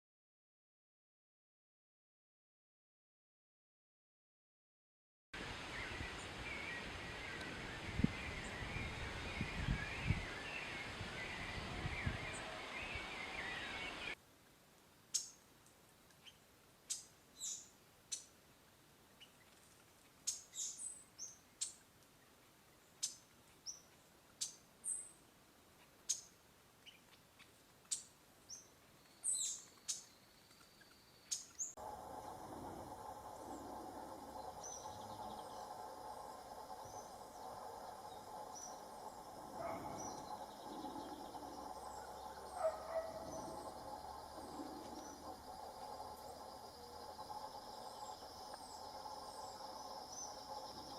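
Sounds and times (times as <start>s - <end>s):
small songbirds chattering: 19.2s - 21.8s, 25.8s - 50.9s
high bird chirps: 34.0s - 50.9s.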